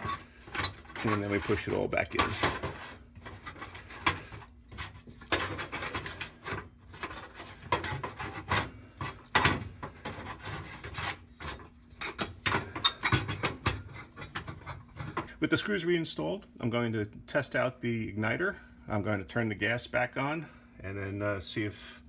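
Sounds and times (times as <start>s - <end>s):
metal parts scraping and clicking: 0.0s - 9.3s.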